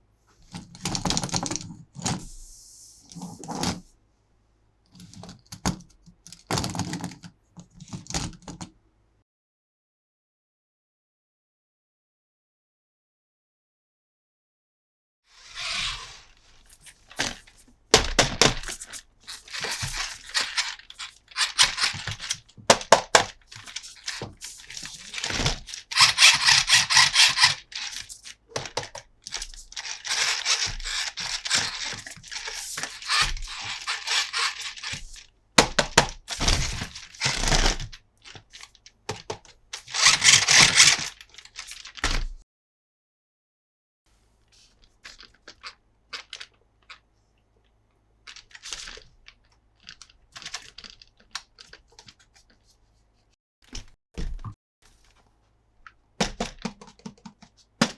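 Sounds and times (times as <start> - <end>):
packaging rustling and crinkling: 15.4 - 38.8, 39.8 - 42.3, 45.0 - 46.5, 48.3 - 52.8
plastic toy parts clicking: 17.2 - 41.7.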